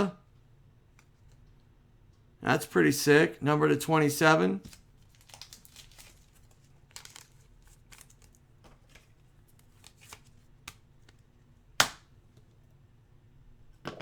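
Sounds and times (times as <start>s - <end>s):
cards clicking and rustling: 4.6s - 11.2s.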